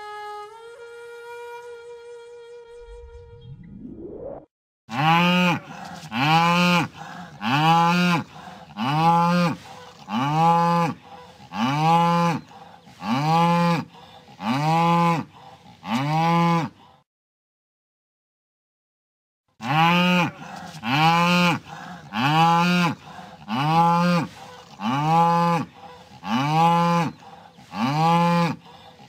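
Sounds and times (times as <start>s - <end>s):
short rising glide: 2.6s - 4.5s
cow mooing: 4.9s - 16.8s, 19.6s - 28.6s.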